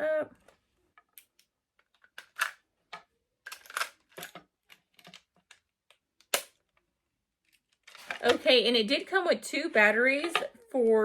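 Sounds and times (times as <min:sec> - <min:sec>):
small plastic clicks: 0:00.9 - 0:08.4.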